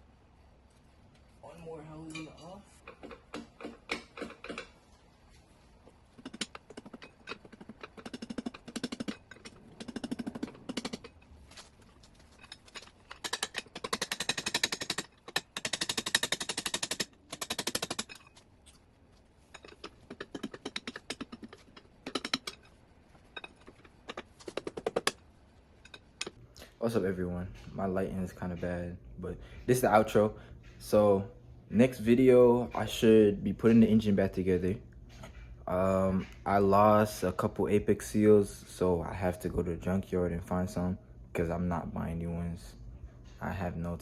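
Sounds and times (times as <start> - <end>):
wrench clicking: 6.2 - 11.2, 12.4 - 18.3, 19.5 - 22.7.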